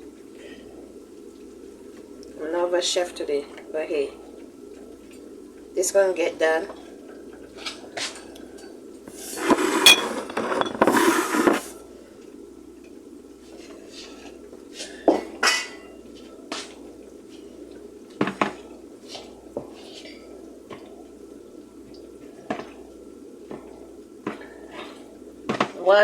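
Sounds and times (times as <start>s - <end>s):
dishes and pots clattering: 9.8s - 10.9s, 15.4s - 15.9s.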